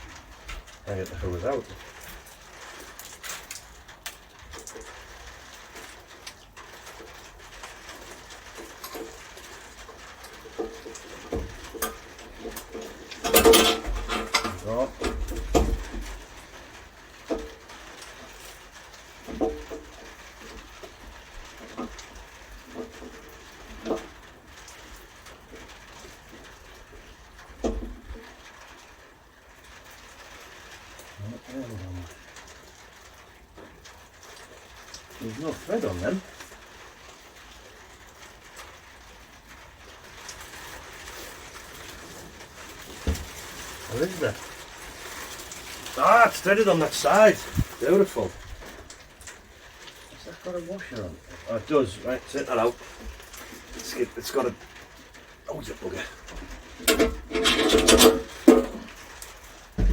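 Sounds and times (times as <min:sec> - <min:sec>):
heavy rain hissing: 0:00.0 - 0:59.9
metal parts knocking and clunking: 0:08.6 - 0:16.4, 0:56.5 - 0:59.0.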